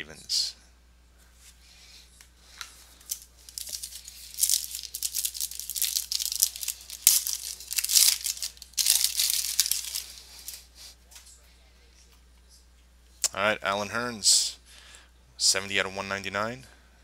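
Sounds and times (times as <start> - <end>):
plastic wrapping crinkling: 2.5 - 10.7.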